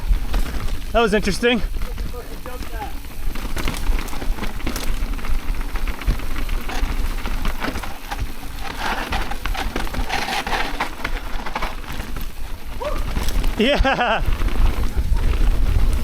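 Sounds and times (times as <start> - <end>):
bike rattling over rough ground: 0.0 - 16.0
tyres crackling on dirt: 0.0 - 16.0
wind rumble on microphone: 0.0 - 16.0.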